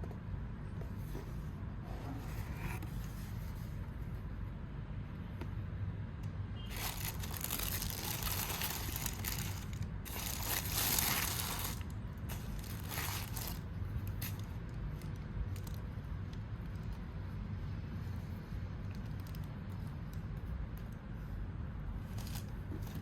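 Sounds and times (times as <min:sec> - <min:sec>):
packaging rustling and crinkling: 0:06.7 - 0:15.8, 0:22.1 - 0:23.0.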